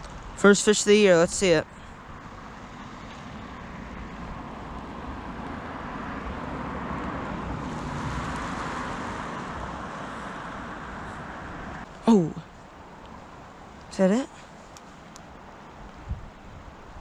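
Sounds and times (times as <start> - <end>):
car driving past: 2.3 - 11.9.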